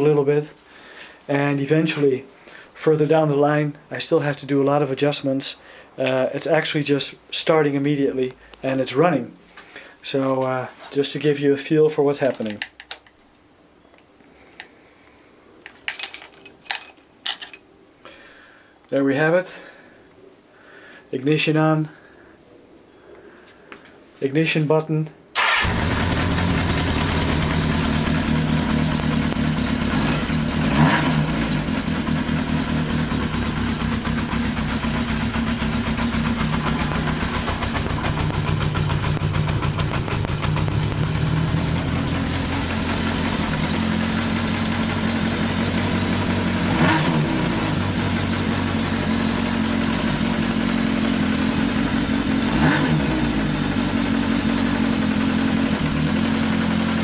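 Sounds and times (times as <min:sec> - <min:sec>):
motorcycle engine idling and revving: 0:25.5 - 0:57.0.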